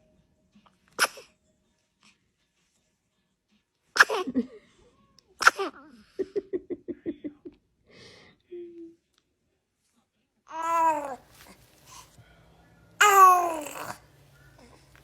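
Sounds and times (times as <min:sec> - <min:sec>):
baby sneezing: 0:00.9 - 0:01.3, 0:04.0 - 0:04.3, 0:05.4 - 0:05.8, 0:10.6 - 0:11.6, 0:13.0 - 0:14.0
short baby vocal sounds: 0:10.6 - 0:12.1, 0:13.0 - 0:14.0.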